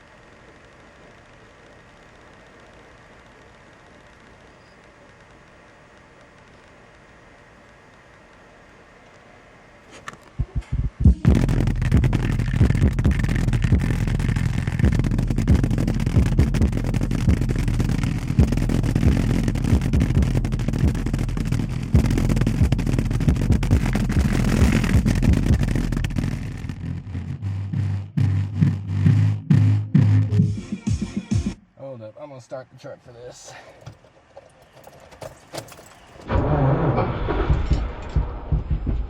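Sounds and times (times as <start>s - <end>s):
loud bass-heavy music from stereo: 10.4s - 31.6s.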